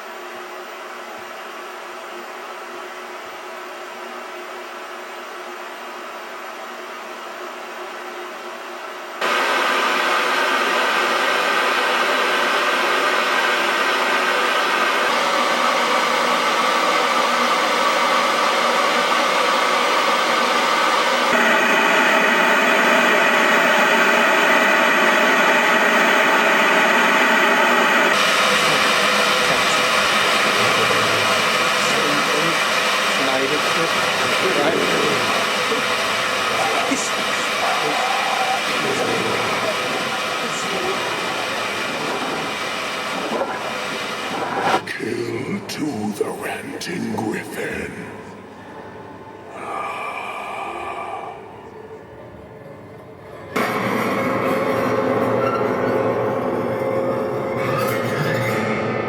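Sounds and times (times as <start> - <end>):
television static hiss: 21.3 - 48.6.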